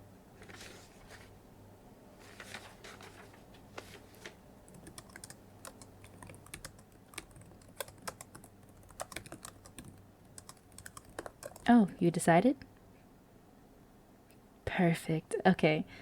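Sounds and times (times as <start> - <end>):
faint low hum: 0.0 - 16.0
typing on computer keyboard: 4.7 - 11.7.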